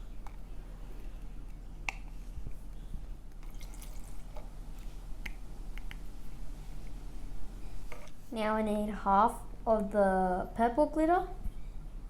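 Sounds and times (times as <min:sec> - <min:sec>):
faint liquid drips: 0:03.3 - 0:05.4.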